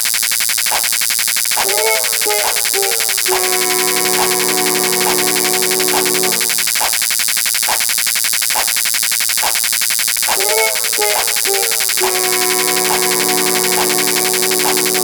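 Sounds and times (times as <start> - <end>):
regular beat: 1.6 - 7.1, 10.3 - 15.0
run of pitched notes: 1.6 - 7.1, 10.4 - 15.0
held synth tones: 1.6 - 7.2, 10.3 - 15.0
electronic music with buzzing texture: 1.6 - 7.9, 10.3 - 15.0.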